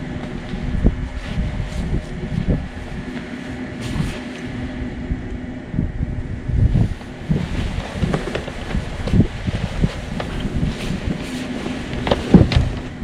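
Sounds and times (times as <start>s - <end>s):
wind rumbling on microphone: 0.0s - 13.0s
knocks and rustles: 6.9s - 13.0s.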